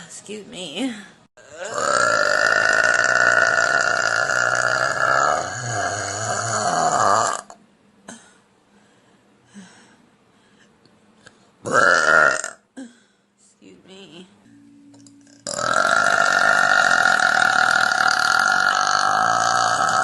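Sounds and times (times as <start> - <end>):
woman burping loudly: 1.4 - 7.6, 11.6 - 12.9, 15.2 - 20.0.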